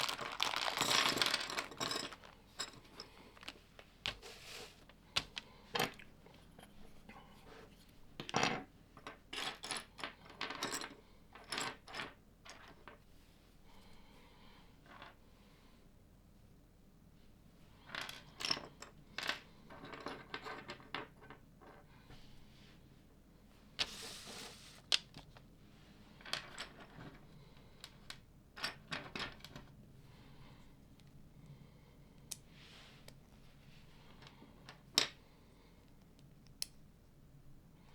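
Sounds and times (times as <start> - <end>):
plastic pieces scraping: 0.0 - 5.4.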